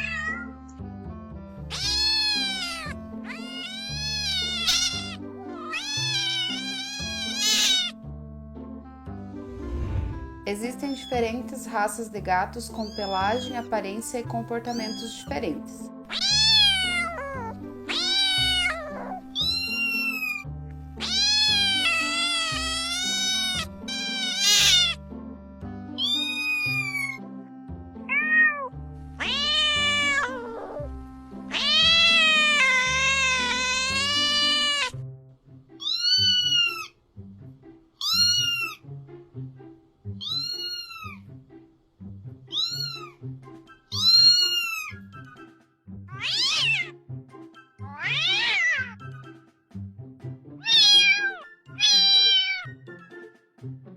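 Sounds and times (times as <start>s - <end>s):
kittens meowing: 0.0s - 0.5s, 1.6s - 8.0s, 12.8s - 13.7s, 16.1s - 25.0s, 26.0s - 27.2s, 28.1s - 35.0s, 35.8s - 37.0s, 38.0s - 38.8s, 40.2s - 41.2s, 42.5s - 43.2s, 43.9s - 45.1s, 46.1s - 46.9s, 47.8s - 49.2s, 50.6s - 52.8s
background music: 0.0s - 53.9s.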